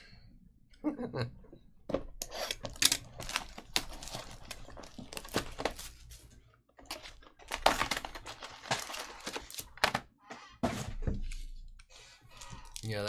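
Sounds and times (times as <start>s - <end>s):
wrappers crinkling and tearing: 2.4s - 10.0s.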